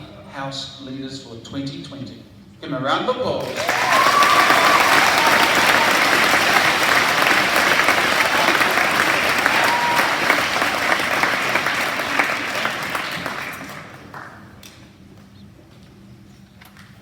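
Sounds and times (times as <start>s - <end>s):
audience applause: 3.4s - 14.6s.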